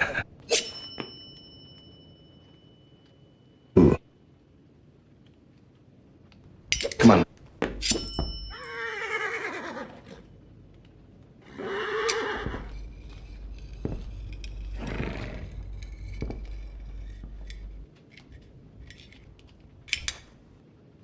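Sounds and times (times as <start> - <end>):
light metallic clinks: 0.5 - 3.6, 6.7 - 8.9
low rumble: 12.4 - 17.9.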